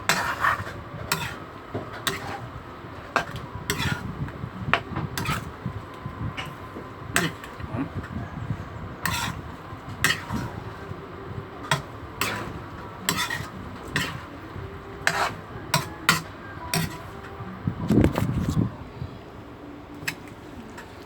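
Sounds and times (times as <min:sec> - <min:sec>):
utensil clinking against a bowl: 0:10.0 - 0:10.6, 0:11.6 - 0:14.4, 0:15.0 - 0:17.3.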